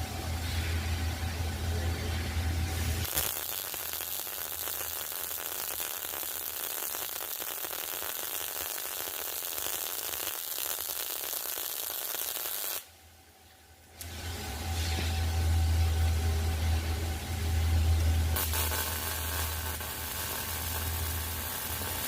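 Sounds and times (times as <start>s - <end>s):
welding arc crackling: 2.9s - 13.0s, 18.0s - 22.0s
low hum: 12.9s - 22.0s.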